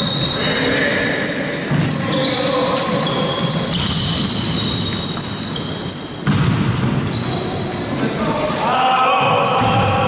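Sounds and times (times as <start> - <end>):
sneakers squeaking: 0.0 - 10.0
basketball bouncing: 6.2 - 7.5, 9.5 - 10.0.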